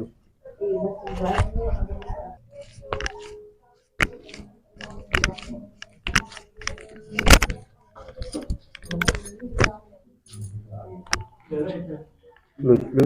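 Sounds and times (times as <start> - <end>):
sharp clicks and knocks: 1.1 - 3.4, 4.0 - 11.3.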